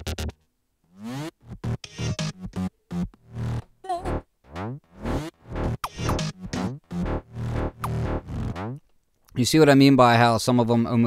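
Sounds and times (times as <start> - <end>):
short synth stabs: 1.4 - 8.9
rising synth sweep: 1.5 - 8.8.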